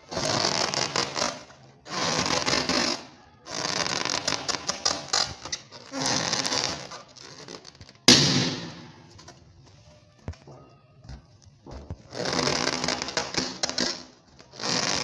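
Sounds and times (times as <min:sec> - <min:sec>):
balloon popping: 0:08.1 - 0:09.3.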